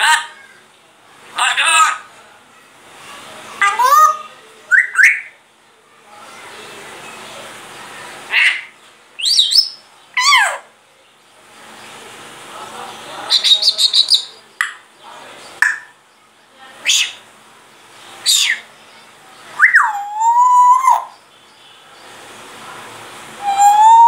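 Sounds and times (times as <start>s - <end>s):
parrot whistling and chirping: 3.6s - 5.4s, 8.3s - 10.6s, 13.3s - 14.3s, 18.2s - 18.6s, 19.6s - 21.1s, 23.4s - 24.0s.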